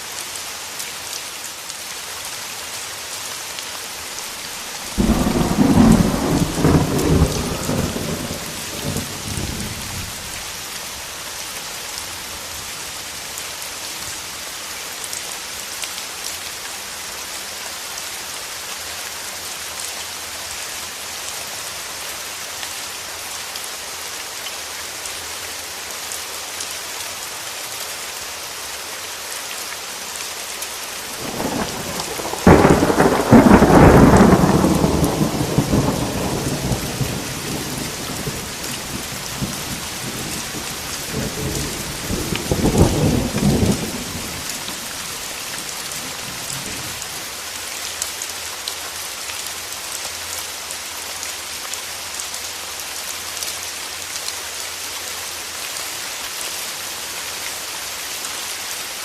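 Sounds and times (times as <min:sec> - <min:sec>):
steady rain: 0:00.0 - 0:59.0
thunderclap rolling: 0:04.9 - 0:09.9, 0:31.2 - 0:45.1
rumble of thunder: 0:04.9 - 0:10.2, 0:31.2 - 0:45.3.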